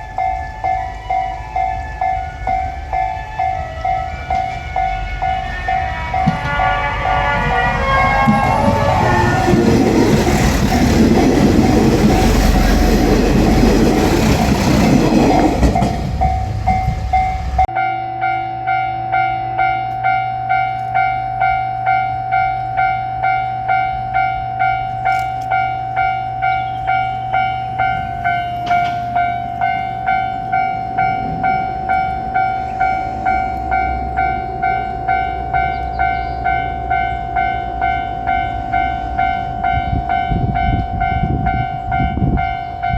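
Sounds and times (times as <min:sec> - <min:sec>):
train rumbling and wheel clatter: 0:00.0 - 0:18.4, 0:19.1 - 0:42.9
level crossing bell clanging: 0:15.2 - 0:42.9.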